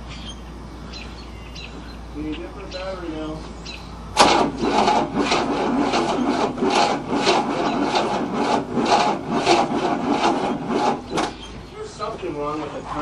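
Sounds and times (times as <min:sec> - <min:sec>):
starter motor cranking engine: 0:04.1 - 0:11.6.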